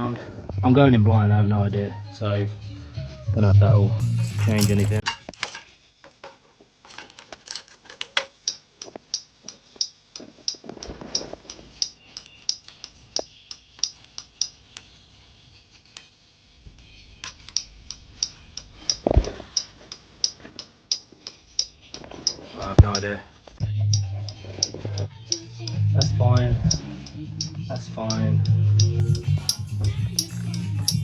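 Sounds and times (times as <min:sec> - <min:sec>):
indicator relay ticking: 0:26.6 - 0:31.0.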